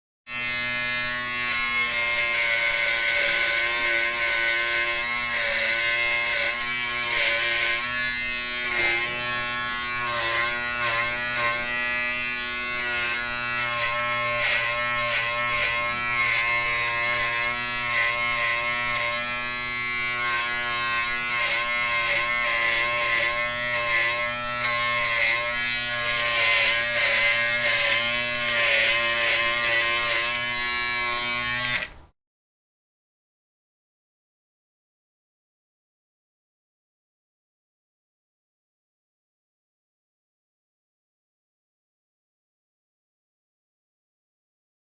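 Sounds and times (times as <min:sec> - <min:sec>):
electric razor buzzing: 0:00.3 - 0:32.0.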